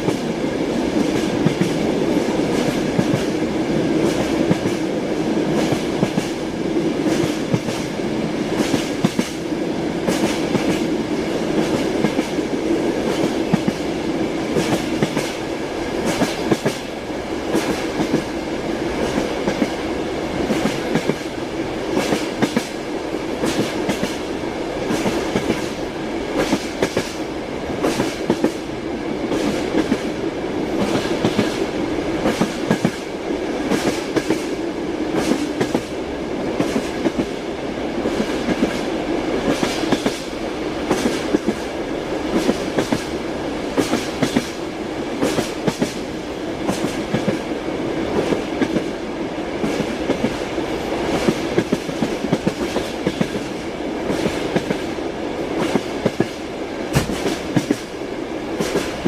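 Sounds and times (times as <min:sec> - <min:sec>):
train wheels knocking over rail joints: 0:55.6 - 0:57.9.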